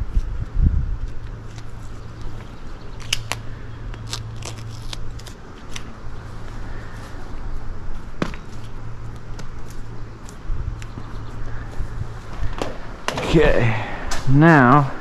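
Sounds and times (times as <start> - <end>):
steady low hum: 0.0 - 15.0
tape clicks and crackles: 0.2 - 6.6, 7.9 - 11.1.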